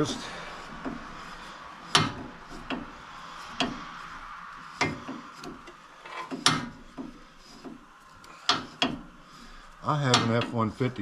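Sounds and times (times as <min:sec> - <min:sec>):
steady background hiss: 0:00.0 - 0:11.0
metallic clicks and knocks: 0:04.8 - 0:09.2, 0:10.0 - 0:10.6.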